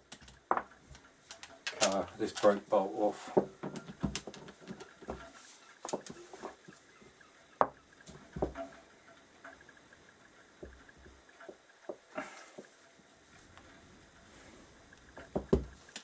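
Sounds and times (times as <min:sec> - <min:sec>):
hand tools clicking and knocking: 0:00.0 - 0:02.7, 0:03.3 - 0:06.8, 0:15.0 - 0:16.0.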